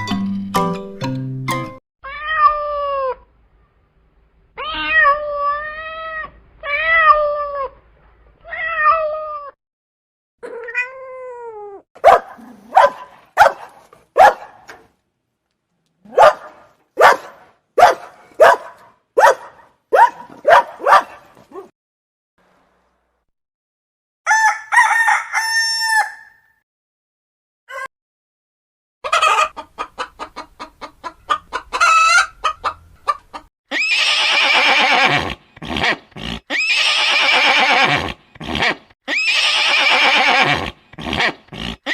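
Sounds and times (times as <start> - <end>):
cat meowing: 2.0 - 3.3, 4.6 - 7.8, 8.4 - 9.6, 10.4 - 11.8.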